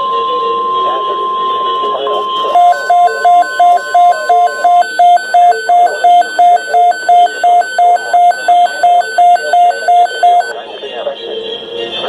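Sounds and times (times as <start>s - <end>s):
steady higher tone: 0.0s - 8.8s
alarm radio beeping: 0.0s - 10.6s.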